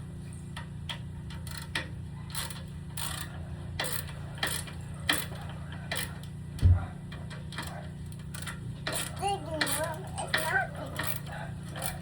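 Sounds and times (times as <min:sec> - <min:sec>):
ratchet clicks and scrapes: 0:00.5 - 0:06.4, 0:07.1 - 0:12.0.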